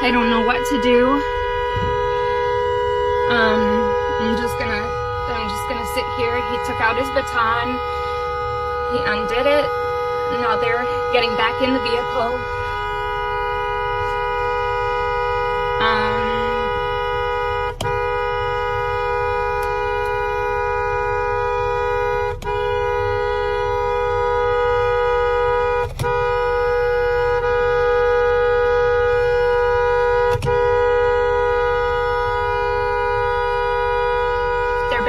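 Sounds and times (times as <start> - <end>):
car horn two-tone blare: 0.0 - 35.0.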